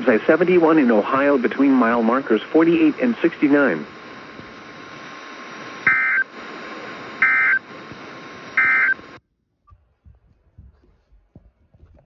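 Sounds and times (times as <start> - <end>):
radio hiss: 0.0 - 9.2
warbling digital data tones: 3.5 - 9.2.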